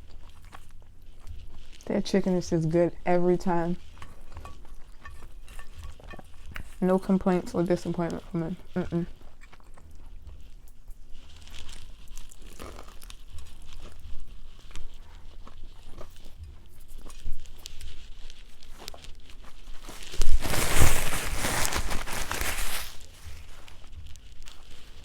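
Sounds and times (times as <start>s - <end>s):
chewing fried chicken: 0.0s - 25.0s.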